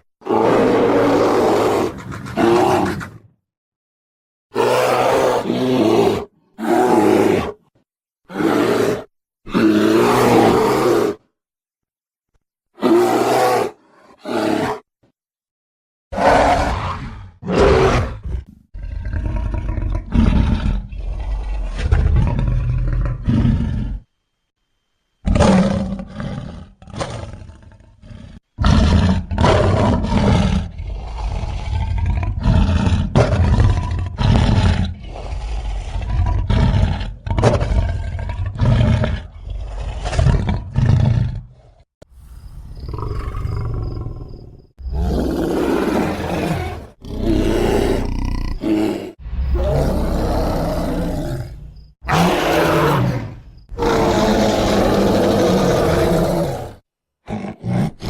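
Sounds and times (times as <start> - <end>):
bear roaring and growling: 0.2 - 3.3, 4.5 - 7.7, 8.3 - 11.2, 12.8 - 14.9, 16.1 - 24.1, 25.2 - 58.0.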